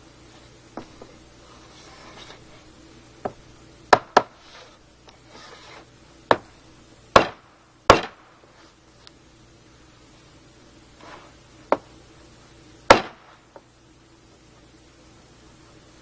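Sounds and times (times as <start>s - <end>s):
soft scraping: 0.2s - 2.7s, 4.4s - 5.9s
wooden wedges knocked: 3.2s - 4.4s.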